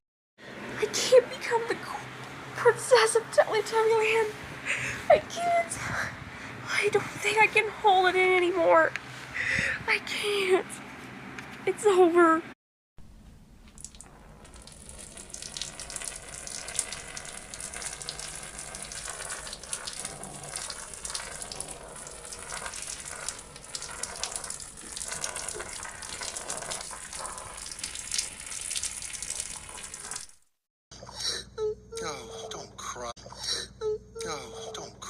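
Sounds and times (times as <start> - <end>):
running water gushing: 13.8 - 30.4.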